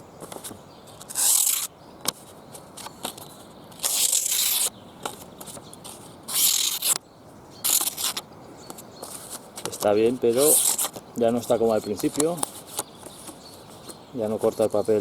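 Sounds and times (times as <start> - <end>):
knife slicing paper: 1.0 - 1.7, 3.8 - 4.7, 6.3 - 7.0, 10.2 - 11.0.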